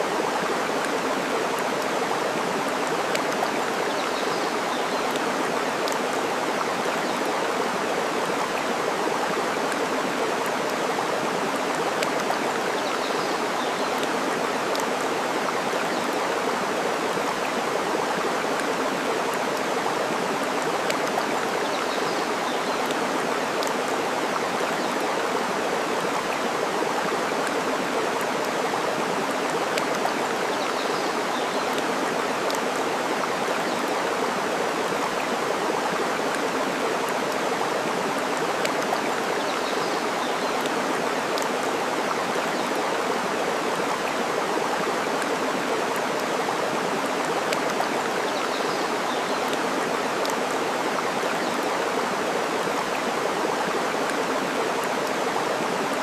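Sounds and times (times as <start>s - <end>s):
flowing water rushing: 0.0s - 56.0s.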